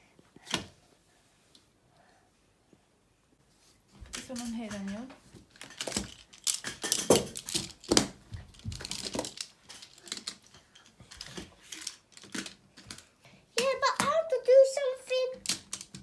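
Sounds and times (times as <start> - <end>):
plastic tiles clicking together: 15.4 - 16.0.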